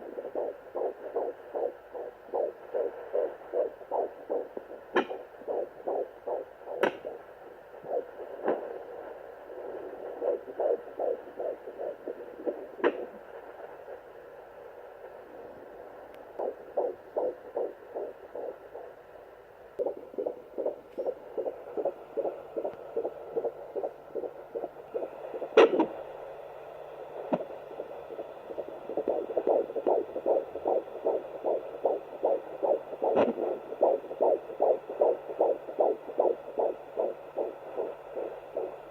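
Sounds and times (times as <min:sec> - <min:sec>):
faint low hum: 0:00.0 - 0:38.9
fetal heartbeat whooshing pulses: 0:00.0 - 0:38.9.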